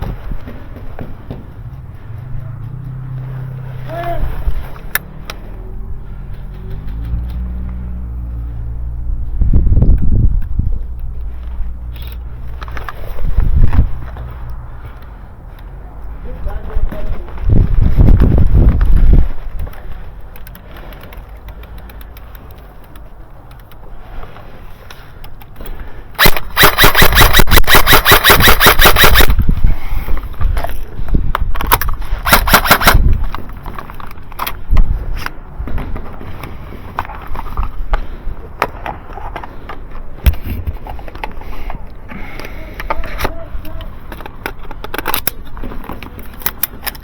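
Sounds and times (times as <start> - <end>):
airsoft gun firing: 26.2 - 29.4, 32.2 - 33.0.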